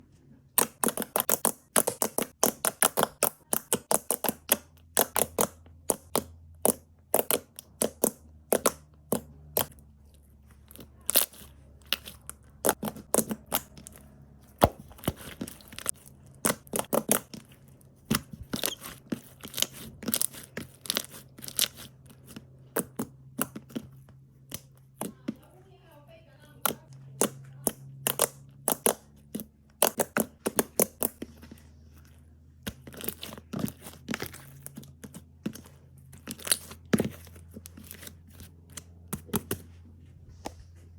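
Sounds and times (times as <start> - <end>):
slime clicking and crackling: 0.6 - 9.8, 10.6 - 25.4, 26.5 - 32.0, 32.6 - 39.6.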